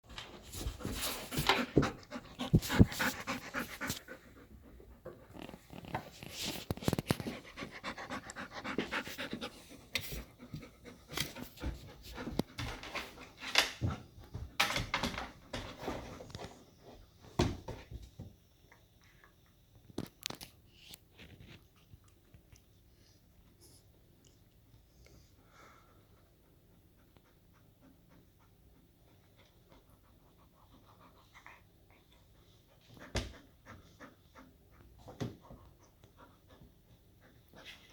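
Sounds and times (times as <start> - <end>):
dog panting: 0.6 - 5.4, 7.1 - 14.2.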